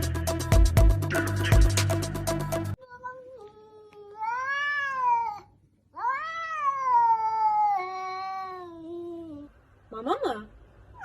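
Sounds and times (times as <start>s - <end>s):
cat meowing: 4.1s - 9.2s.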